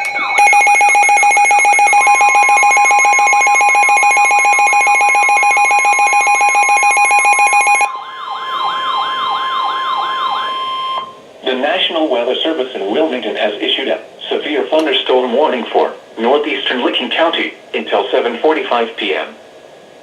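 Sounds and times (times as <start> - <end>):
wailing alarm tone: 0.0 - 11.2
steady warning tone: 0.1 - 11.2
rapid pulsed beeping: 0.4 - 7.9.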